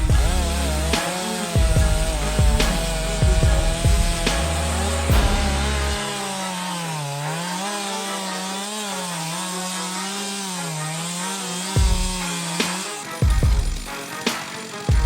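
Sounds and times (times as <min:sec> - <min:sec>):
deep bass beat: 0:00.0 - 0:06.3
chainsaw cutting wood: 0:00.0 - 0:15.0.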